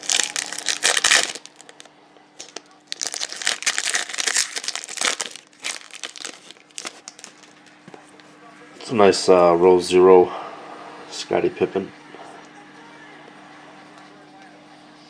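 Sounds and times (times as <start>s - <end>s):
card pack wrapper crinkling: 0.0s - 7.8s.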